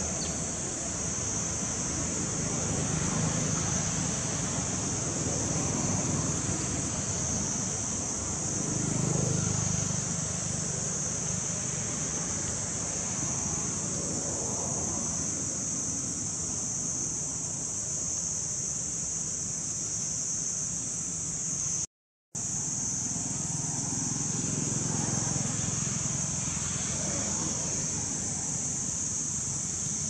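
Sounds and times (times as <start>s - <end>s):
high hiss: 0.0s - 30.0s.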